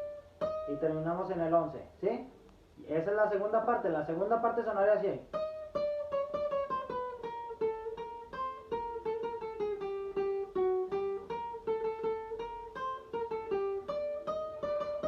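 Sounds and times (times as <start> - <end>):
guitar melody of plucked notes: 0.0 - 1.6, 5.2 - 15.0.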